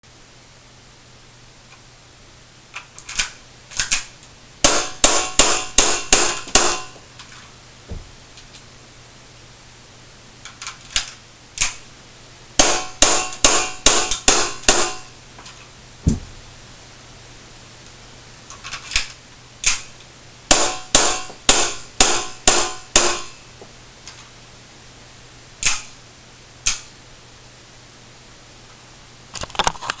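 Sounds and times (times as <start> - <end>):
airsoft pistol shots: 4.6 - 6.9, 12.6 - 15.1, 20.5 - 23.3
dull thump: 7.9 - 8.2, 16.0 - 16.5.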